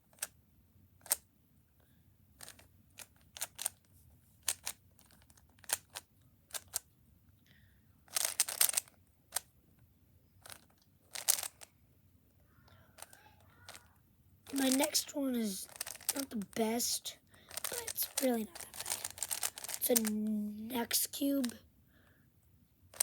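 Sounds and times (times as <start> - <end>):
speed cube clicking: 1.0 - 1.2, 2.4 - 3.8, 4.4 - 6.8, 8.1 - 9.5, 10.4 - 11.7, 13.0 - 13.9, 14.5 - 20.2.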